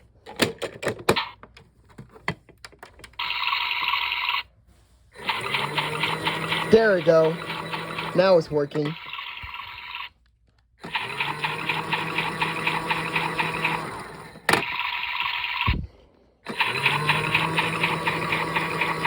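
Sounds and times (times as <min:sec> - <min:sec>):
small washing machine motor whirring: 0:03.1 - 0:04.5, 0:05.1 - 0:10.2, 0:10.8 - 0:19.0.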